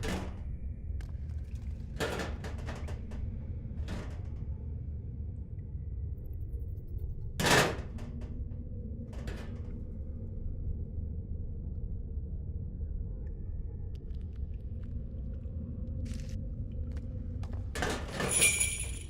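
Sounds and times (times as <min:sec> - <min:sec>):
steady low rumble: 0:08.0 - 0:17.8.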